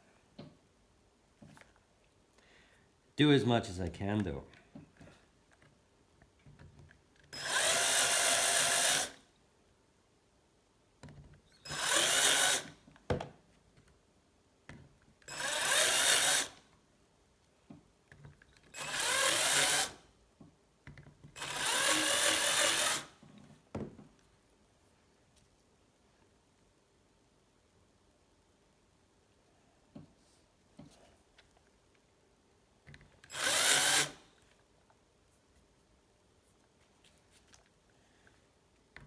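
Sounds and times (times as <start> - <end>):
power drill running: 7.4 - 9.2, 11.6 - 12.8, 15.3 - 16.6, 18.8 - 20.0, 21.4 - 23.1, 33.2 - 34.2.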